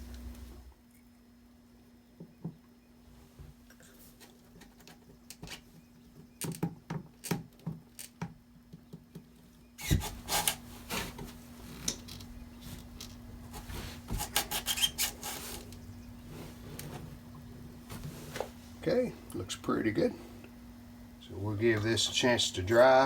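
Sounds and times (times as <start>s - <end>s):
scraping and rubbing: 9.8s - 18.6s.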